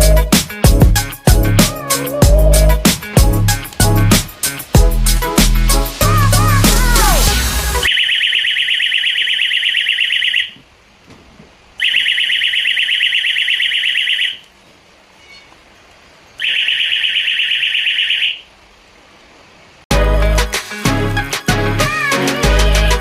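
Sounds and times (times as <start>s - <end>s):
pulsing electronic alarm tone: 7.9s - 10.5s, 11.8s - 14.4s.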